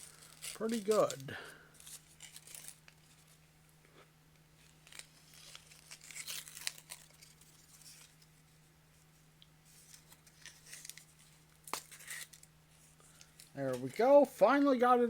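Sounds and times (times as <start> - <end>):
wrapper crinkling and tearing: 0.0 - 3.4, 4.6 - 8.4, 9.8 - 14.1.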